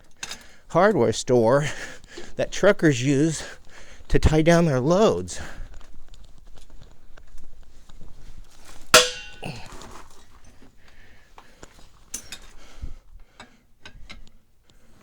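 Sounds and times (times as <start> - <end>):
metal clatter: 8.8 - 9.6
ringing metal clang: 9.0 - 9.6.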